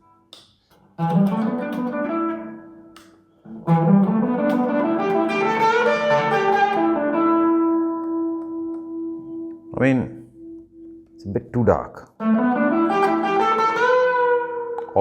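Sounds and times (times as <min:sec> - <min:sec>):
electric guitar single notes: 0:01.0 - 0:11.2, 0:12.2 - 0:15.0.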